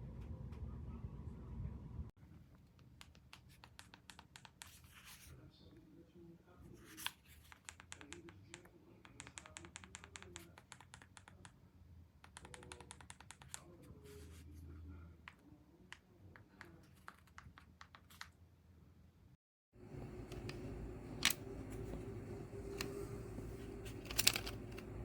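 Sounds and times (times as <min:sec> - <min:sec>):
remote control buttons clicking: 0:20.0 - 0:25.0.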